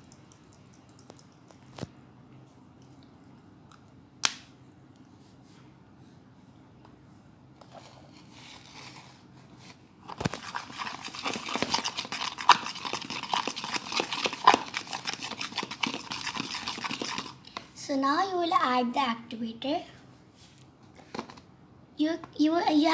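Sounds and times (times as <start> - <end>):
fork stirring slime: 10.1 - 17.7.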